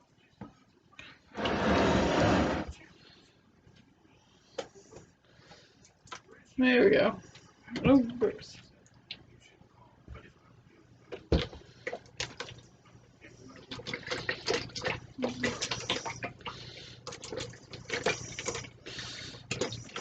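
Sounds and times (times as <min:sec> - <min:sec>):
liquid sloshing in a pot: 0:13.5 - 0:20.0.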